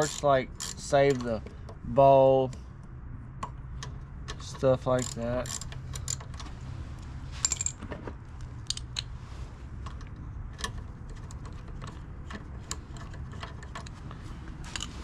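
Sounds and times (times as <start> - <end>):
metal parts clicking and clinking: 0.0 - 1.4, 4.3 - 6.5, 7.4 - 7.9, 8.6 - 9.1, 9.8 - 15.0
metallic rings: 7.4 - 7.8.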